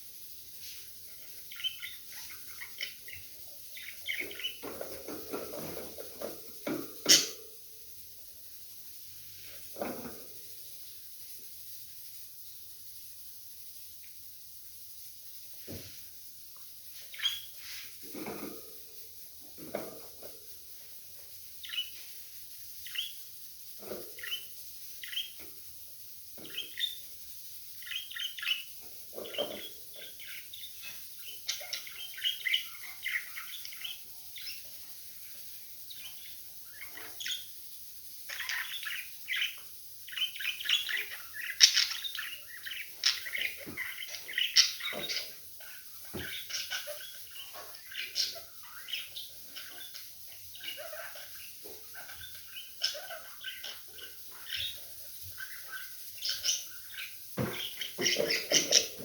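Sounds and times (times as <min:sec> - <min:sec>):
budgerigars chirping: 0:01.2 - 0:07.5, 0:17.1 - 0:18.6, 0:21.6 - 0:22.0, 0:22.8 - 0:23.2, 0:23.8 - 0:25.6, 0:26.4 - 0:27.1, 0:27.8 - 0:34.8, 0:35.8 - 0:37.5, 0:38.3 - 0:59.0.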